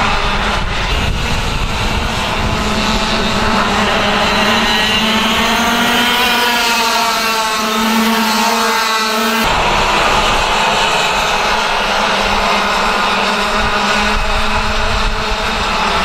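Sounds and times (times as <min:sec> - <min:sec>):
racing kart engine at high revs: 0:00.0 - 0:16.0.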